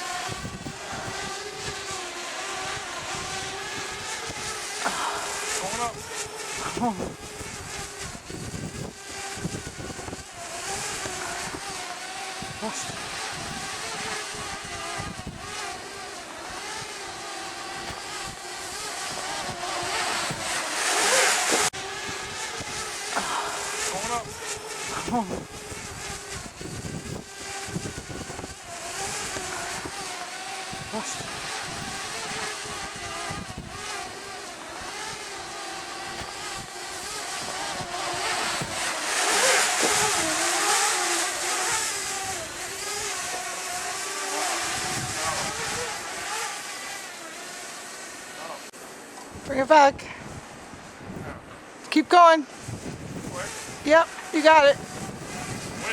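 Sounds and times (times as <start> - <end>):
wind buffeting microphone: 0.0 - 47.3, 49.2 - 55.9
drone propellers whining: 0.0 - 55.9.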